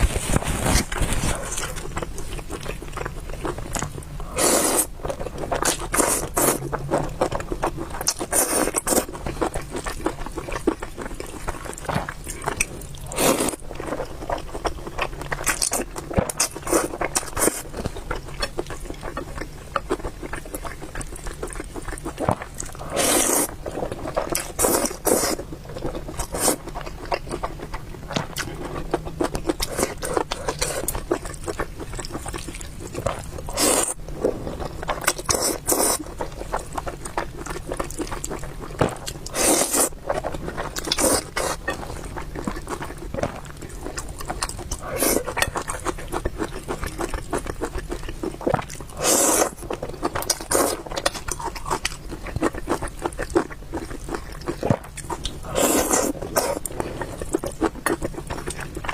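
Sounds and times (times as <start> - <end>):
wet chewing and mouth clicks: 0.0 - 58.9
slurping noodles: 4.2 - 4.9, 13.0 - 13.6, 22.8 - 25.4, 33.0 - 34.4, 35.0 - 36.1, 39.3 - 39.9, 44.7 - 46.7, 48.9 - 49.6, 55.4 - 57.6.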